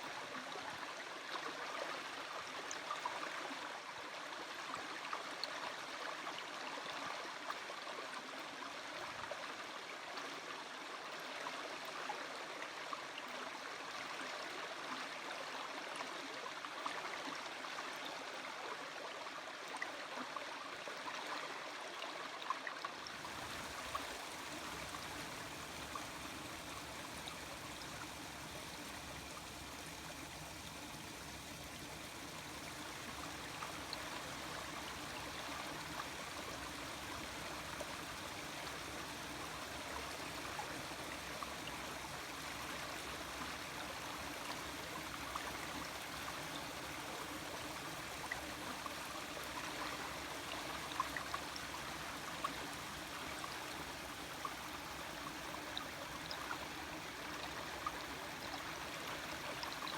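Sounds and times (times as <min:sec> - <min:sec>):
stream water flowing: 0:00.0 - 0:59.9
small water splashes: 0:23.1 - 0:59.9.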